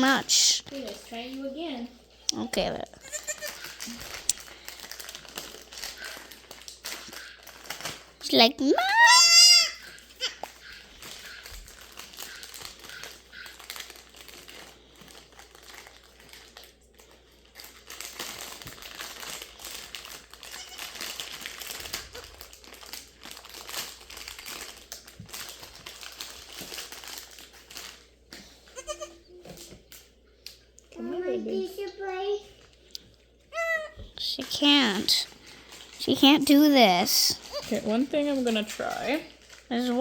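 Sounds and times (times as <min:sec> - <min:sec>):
rustling and crinkling handling: 0:00.0 - 0:09.0, 0:09.6 - 0:40.0
goat kid bleating: 0:02.8 - 0:04.0, 0:08.8 - 0:10.5, 0:20.5 - 0:21.0, 0:28.8 - 0:29.4.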